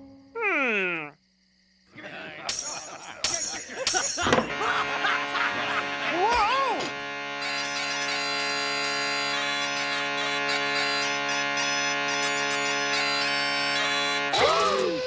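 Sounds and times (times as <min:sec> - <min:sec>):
bagpipe-like drone and melody: 0:04.2 - 0:15.0.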